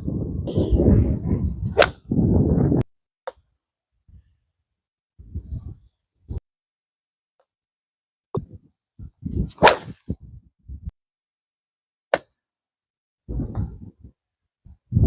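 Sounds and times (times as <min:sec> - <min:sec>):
wind buffeting microphone: 0:00.0 - 0:02.8, 0:05.2 - 0:06.4, 0:08.4 - 0:10.9, 0:13.3 - 0:14.1, 0:14.7 - 0:15.0.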